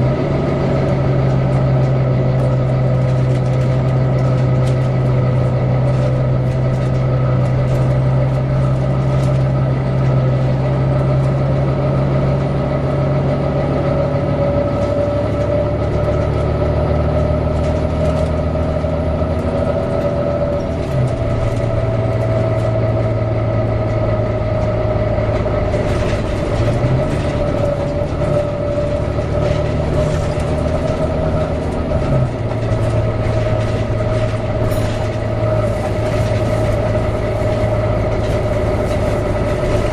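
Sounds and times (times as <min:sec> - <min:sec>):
bus engine running: 0:00.0 - 0:39.9.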